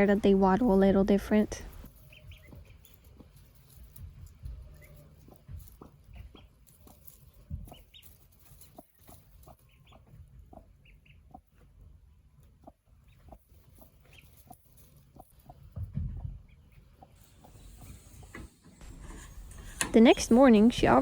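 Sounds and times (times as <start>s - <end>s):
ducklings peeping: 0.0s - 18.4s
hen clucking softly: 1.9s - 18.5s.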